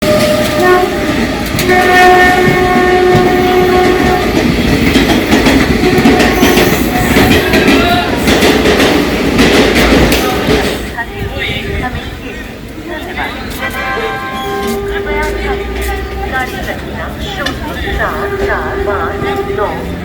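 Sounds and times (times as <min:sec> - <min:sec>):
train horn blowing: 0:00.0 - 0:04.5, 0:05.8 - 0:08.2, 0:13.4 - 0:16.7, 0:18.6 - 0:20.0
trains rushing on rails: 0:00.0 - 0:20.0.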